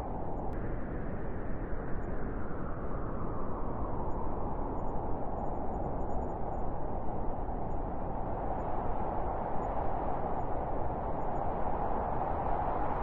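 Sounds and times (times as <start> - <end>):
wind rushing steadily: 0.0 - 13.0.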